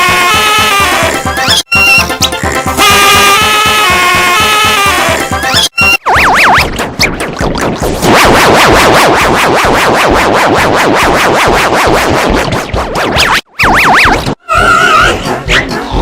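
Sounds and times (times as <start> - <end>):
electronic music with pulsing beat: 0.0 - 16.0
whistle-like swooping tone: 5.5 - 6.7.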